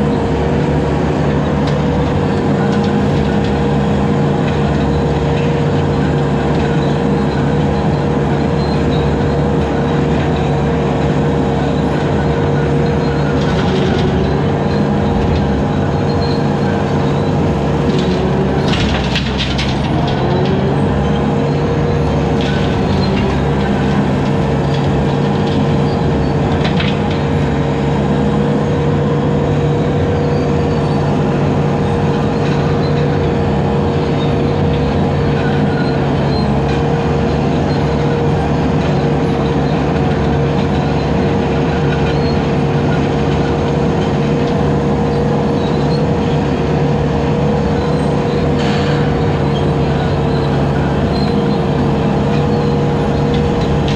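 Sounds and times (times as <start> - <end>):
diesel engine running under load: 0.0 - 53.9
brush cutter whine: 46.9 - 53.9.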